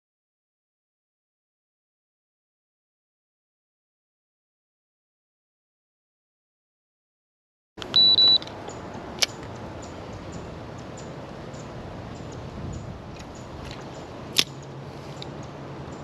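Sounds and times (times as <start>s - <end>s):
sharp click: 7.8s - 9.6s, 13.1s - 15.3s
outdoor background hiss: 7.8s - 16.0s
high-pitched electronic beeps: 7.9s - 8.4s.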